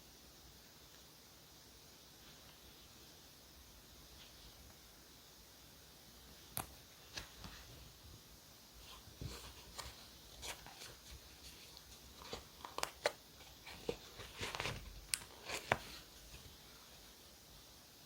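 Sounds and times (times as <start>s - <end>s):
paper and stickers handled: 8.8s - 16.6s.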